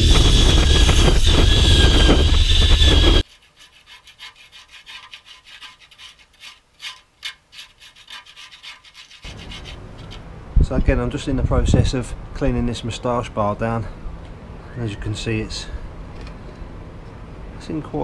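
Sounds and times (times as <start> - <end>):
power tool whining: 0.0 - 3.2
faint scraping strokes on steel: 2.6 - 10.3.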